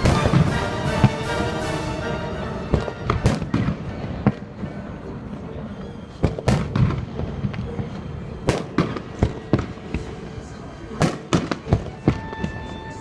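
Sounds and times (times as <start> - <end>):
fireworks bangs: 0.0 - 4.9, 6.1 - 10.1.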